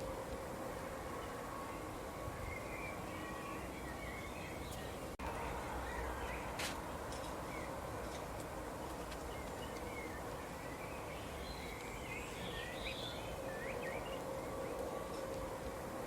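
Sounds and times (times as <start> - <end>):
outdoor background hiss: 0.0 - 16.0
small birds chirping: 1.2 - 6.6, 8.8 - 15.3.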